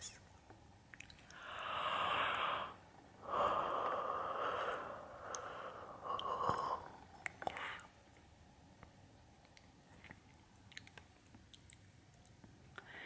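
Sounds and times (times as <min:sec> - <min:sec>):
faint mouth click: 0:09.4 - 0:12.9.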